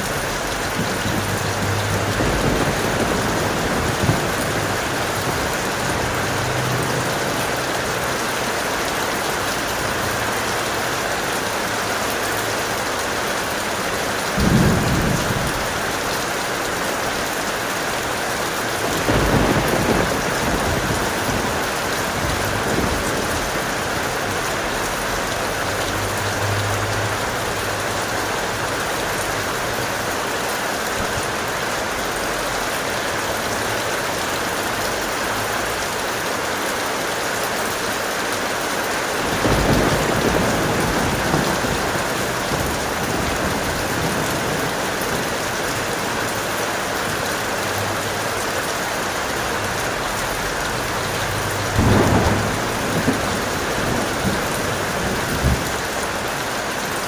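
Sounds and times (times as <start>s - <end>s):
thunder rumbling: 0.0s - 9.1s, 14.3s - 16.2s, 18.6s - 27.8s, 39.1s - 46.5s, 50.8s - 56.4s
strong steady rain: 0.0s - 57.0s.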